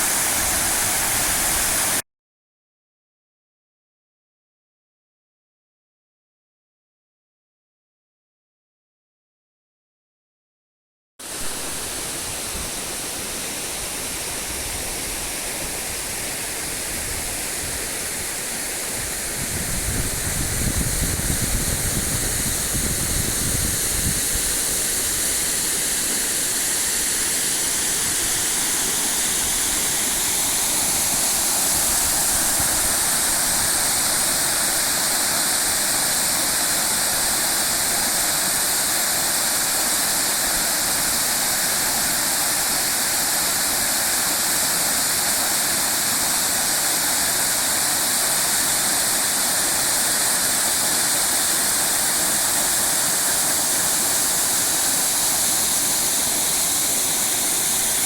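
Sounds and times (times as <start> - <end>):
waterfall pouring: 20.8 - 58.0.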